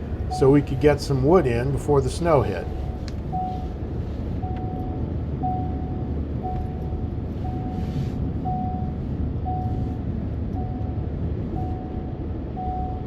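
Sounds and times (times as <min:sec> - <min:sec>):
vehicle engine rumbling: 0:00.0 - 0:13.0
electronic warning beep: 0:00.1 - 0:13.0.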